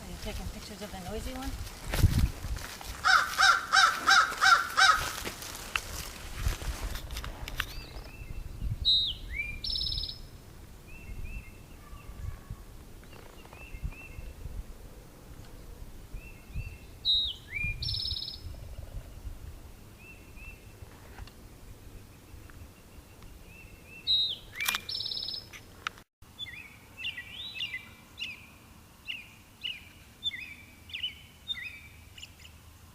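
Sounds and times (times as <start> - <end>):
songbird singing: 7.6 - 32.9.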